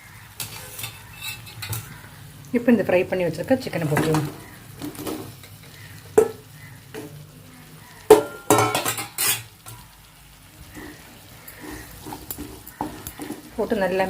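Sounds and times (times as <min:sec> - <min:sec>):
spoon scraping a pan: 0:00.3 - 0:02.1, 0:03.7 - 0:07.2, 0:08.0 - 0:09.8, 0:10.6 - 0:13.7.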